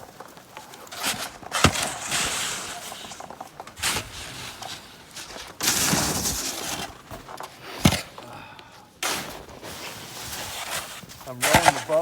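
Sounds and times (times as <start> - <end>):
snow shovel scraping snow: 0.0 - 8.3, 9.0 - 12.0.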